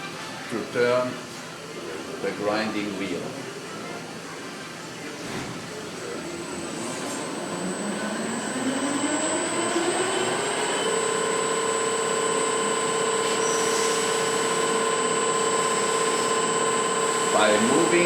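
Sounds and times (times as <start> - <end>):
grinding wheel whine: 6.2 - 18.0.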